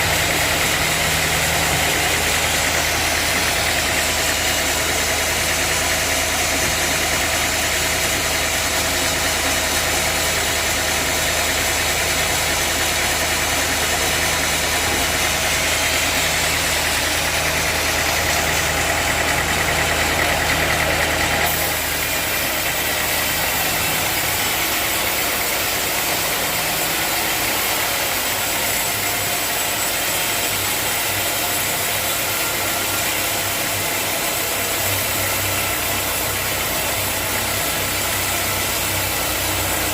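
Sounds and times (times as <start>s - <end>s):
engine hum: 0.0s - 30.9s
saw hissing through log: 0.0s - 39.9s.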